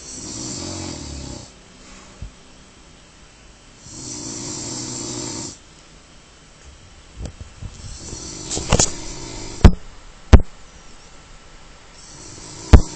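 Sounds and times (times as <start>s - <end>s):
loud snoring: 0.0s - 1.5s, 3.8s - 5.6s, 7.9s - 9.8s, 12.0s - 12.9s.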